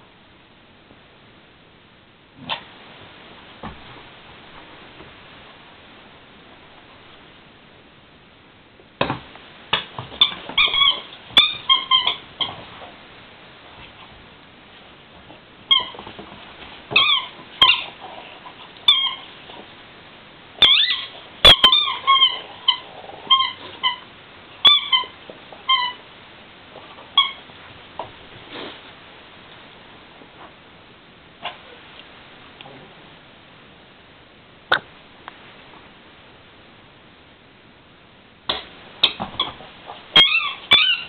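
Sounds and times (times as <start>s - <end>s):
squeaky toy squeaks: 10.2s - 12.6s, 16.9s - 17.9s, 18.9s - 19.3s, 20.6s - 26.0s, 27.2s - 27.4s, 39.4s - 41.0s.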